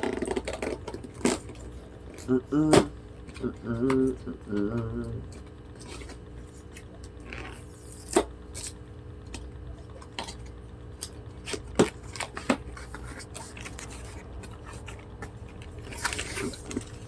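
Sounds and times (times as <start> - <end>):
gift packaging clicks and knocks: 0.0 - 4.0, 9.3 - 17.0
packaging rustle: 11.0 - 17.0.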